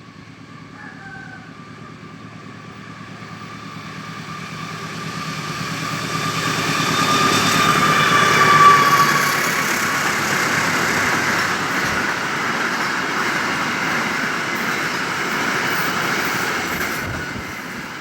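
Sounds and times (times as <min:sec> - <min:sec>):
train engine hum: 0:00.0 - 0:18.0
train high whine: 0:00.0 - 0:18.0.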